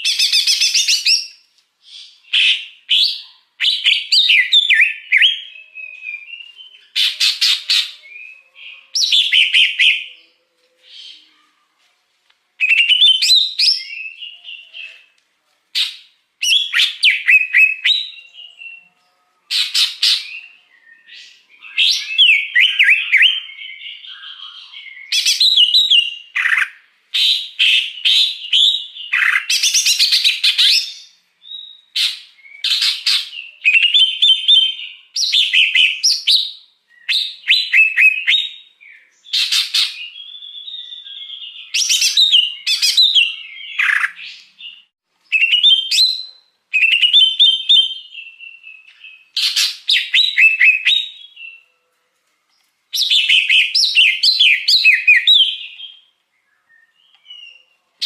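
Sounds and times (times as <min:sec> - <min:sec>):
bird chattering and whistling: 0:00.0 - 0:10.2, 0:45.3 - 0:51.6.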